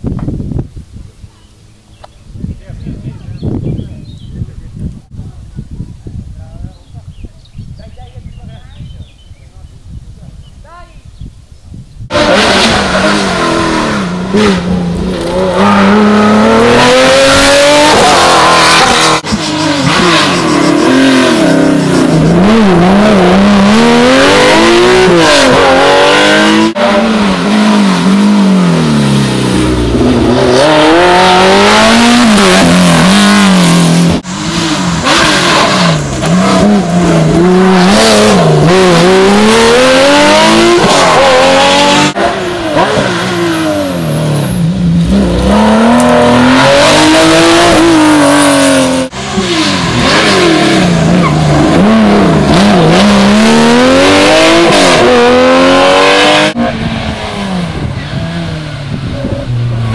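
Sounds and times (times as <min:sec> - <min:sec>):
rally car engines at full throttle: 0:12.0 - 0:59.9.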